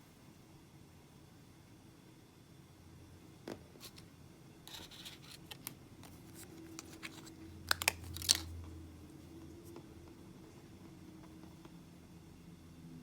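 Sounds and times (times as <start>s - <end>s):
plastic packaging crinkling: 4.7s - 8.6s.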